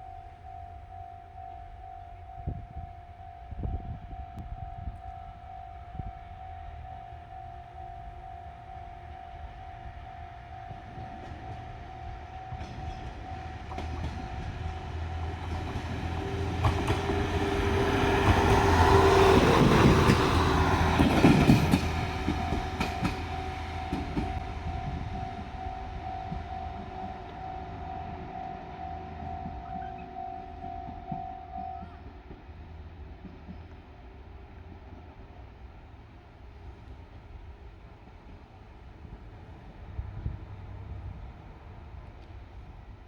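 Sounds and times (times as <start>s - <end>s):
level-crossing warning bell: 0.0s - 32.3s
diesel train passing: 0.0s - 43.0s.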